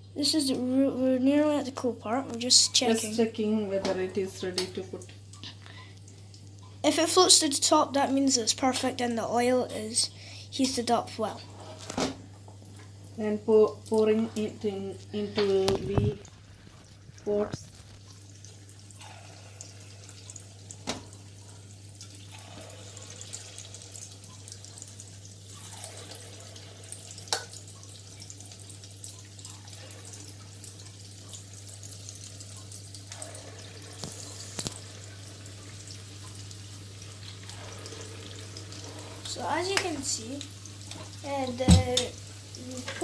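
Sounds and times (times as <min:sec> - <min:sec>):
batter sizzling in hot oil: 0:09.9 - 0:43.0.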